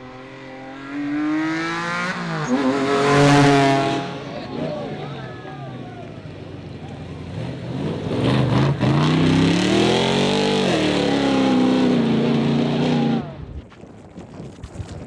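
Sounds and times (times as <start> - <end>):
rally car engine accelerating: 0.0 - 13.5.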